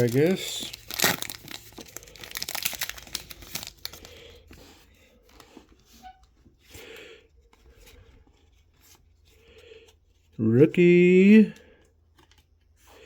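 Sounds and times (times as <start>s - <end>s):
foil wrapper tearing and crinkling: 0.0s - 4.3s.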